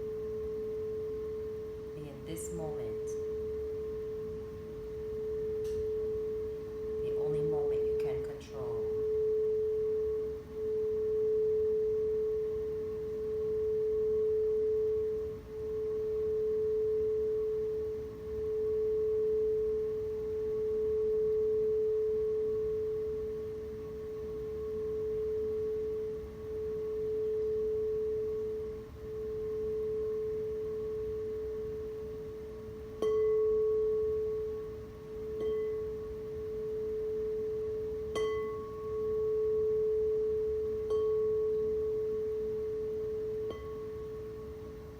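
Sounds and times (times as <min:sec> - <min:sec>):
singing bowl tone: 0:00.0 - 0:44.9
singing bowl strike: 0:05.2 - 0:06.3, 0:32.9 - 0:44.8.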